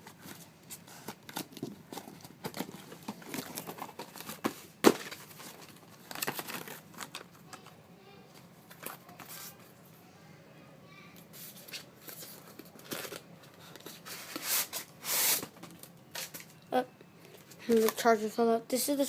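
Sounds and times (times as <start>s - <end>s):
packaging crinkling and tearing: 0.9s - 7.3s.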